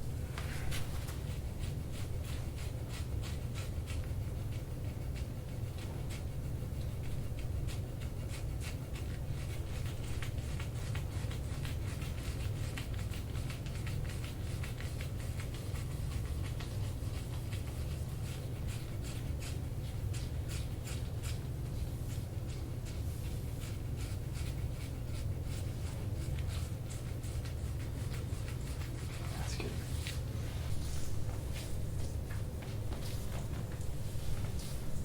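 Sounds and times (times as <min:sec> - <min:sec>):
steady low hum: 0:00.0 - 0:35.0
hands rubbing skin: 0:12.2 - 0:35.0.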